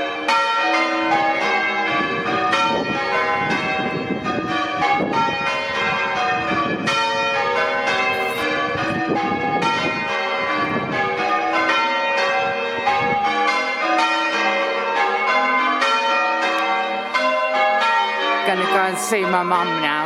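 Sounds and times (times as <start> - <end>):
church bells ringing: 0.0 - 20.0.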